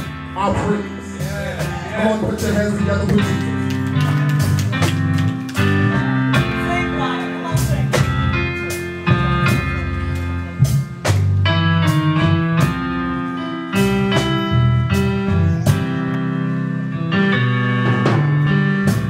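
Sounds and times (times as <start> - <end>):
live gospel band music: 0.0 - 19.0.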